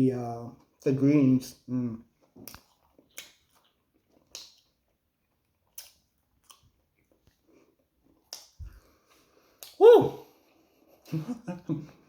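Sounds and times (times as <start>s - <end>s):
person chewing food: 2.0s - 9.8s
wet mouth clicks and smacks: 2.3s - 5.0s, 5.6s - 7.4s, 8.1s - 8.8s, 9.6s - 9.8s.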